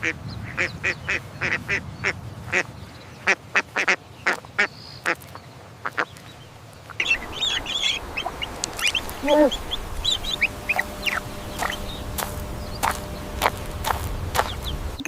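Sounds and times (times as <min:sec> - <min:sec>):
chicks peeping: 0:00.0 - 0:15.0
adult bird honking call: 0:05.8 - 0:15.0.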